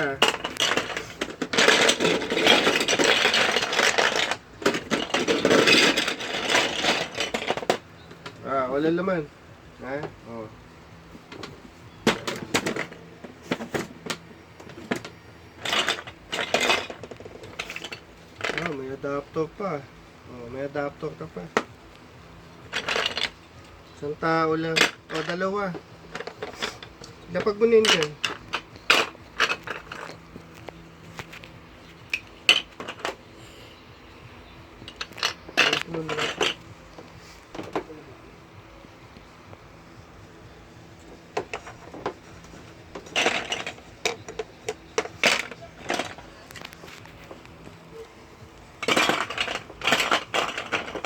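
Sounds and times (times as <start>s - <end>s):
plastic bricks clacking: 0.0s - 8.5s, 11.3s - 18.8s, 22.7s - 23.4s, 24.6s - 33.2s, 34.8s - 37.9s, 41.0s - 47.8s, 48.8s - 51.0s
plastic bricks clicking: 48.8s - 51.0s.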